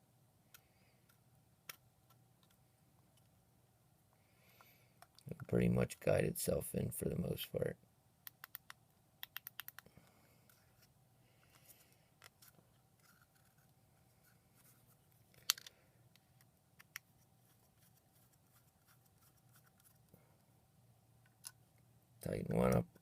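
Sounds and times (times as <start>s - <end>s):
faint plastic and metal clicks: 0.5s - 3.4s, 8.2s - 10.9s, 15.3s - 17.1s.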